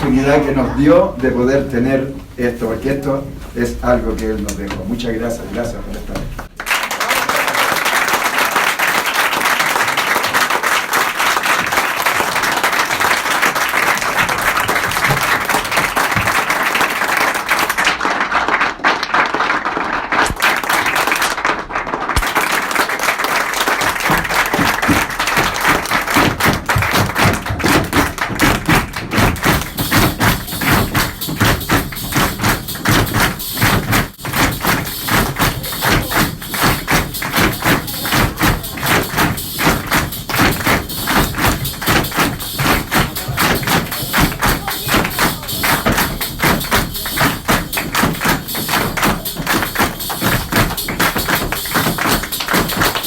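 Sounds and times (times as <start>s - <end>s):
latin american music: 0.0s - 7.4s, 23.6s - 53.0s
applause: 6.4s - 53.0s.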